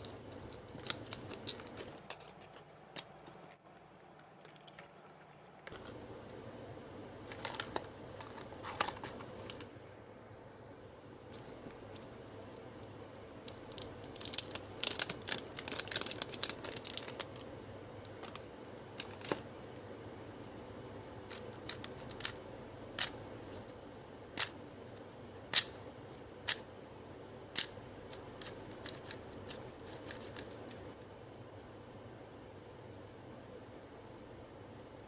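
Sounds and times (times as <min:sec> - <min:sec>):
packaging crinkling and tearing: 0:00.0 - 0:06.0, 0:13.5 - 0:17.4, 0:18.2 - 0:19.4.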